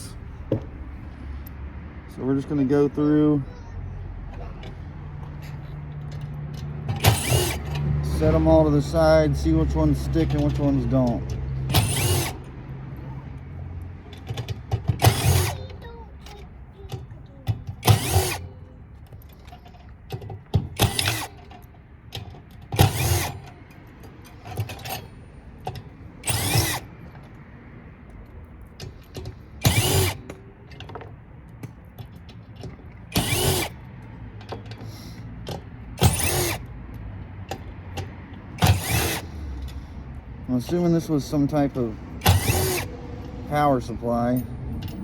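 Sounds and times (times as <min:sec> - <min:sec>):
power drill backing out screws: 0:04.7 - 0:09.0, 0:09.7 - 0:12.5, 0:14.1 - 0:23.6, 0:25.7 - 0:27.4, 0:28.8 - 0:31.2, 0:31.9 - 0:36.7, 0:37.9 - 0:39.8, 0:40.5 - 0:42.9.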